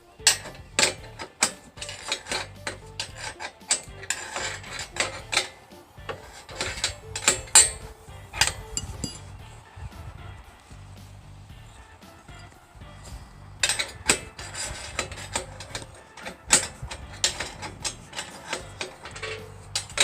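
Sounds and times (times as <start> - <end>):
quiet background music: 0.0 - 20.0
metal clicks and knocks from hand tools: 0.1 - 9.3, 13.6 - 20.0.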